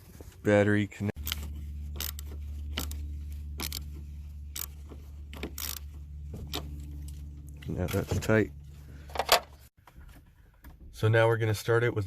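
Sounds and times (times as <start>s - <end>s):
steady low hum: 0.0s - 9.8s
ratchet metal clicks: 2.0s - 3.0s, 3.6s - 3.9s, 4.5s - 4.8s, 5.4s - 5.9s.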